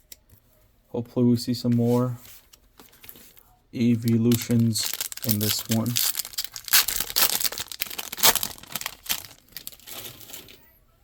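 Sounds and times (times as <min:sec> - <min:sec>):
foil wrapper tearing and crinkling: 0:04.0 - 0:10.4.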